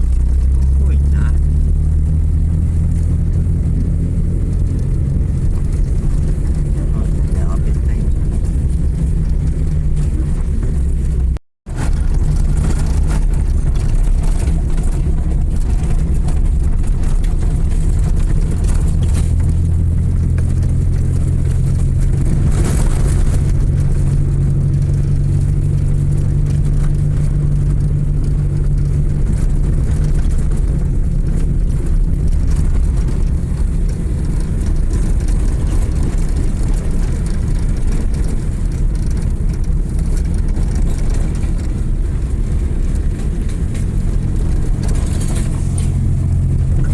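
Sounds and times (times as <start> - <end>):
car engine running: 0.0 - 46.9
road rumble: 0.0 - 46.9.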